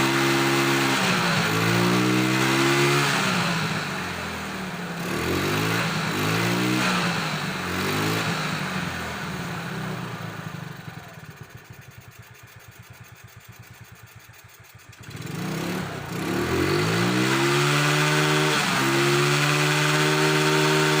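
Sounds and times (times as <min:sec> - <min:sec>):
scooter engine revving: 0:00.0 - 0:21.0.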